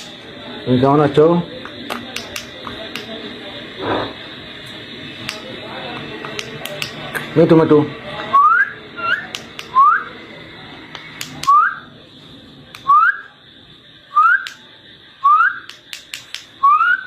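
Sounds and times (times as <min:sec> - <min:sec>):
upward sliding whistles: 0:08.3 - 0:10.1, 0:11.4 - 0:11.9, 0:12.8 - 0:13.3, 0:14.1 - 0:14.5, 0:15.2 - 0:15.7, 0:16.6 - 0:17.0.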